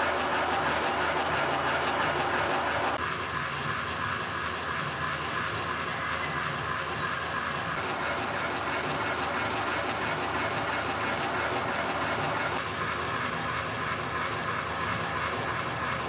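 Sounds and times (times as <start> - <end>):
milling machine running: 0.0 - 3.0, 4.2 - 12.6
high machine whine: 0.0 - 16.0.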